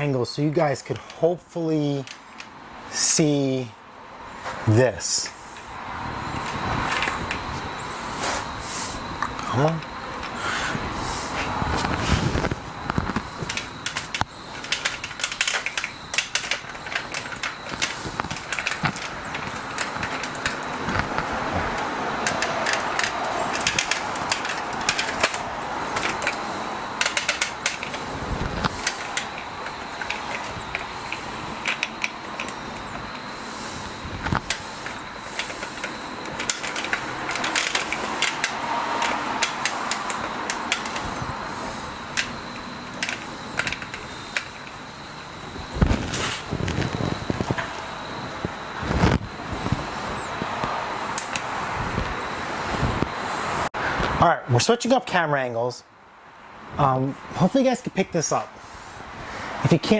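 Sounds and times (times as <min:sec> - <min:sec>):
metallic clicks and scraping of tools: 0:11.2 - 0:45.3, 0:51.1 - 0:51.5.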